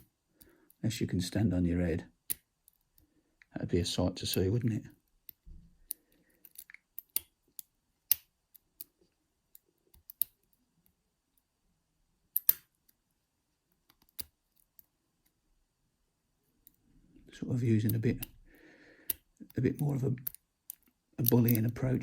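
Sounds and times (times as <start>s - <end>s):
lock pick metallic clicks: 5.2s - 10.5s, 12.3s - 12.8s, 13.9s - 14.9s, 20.2s - 21.7s.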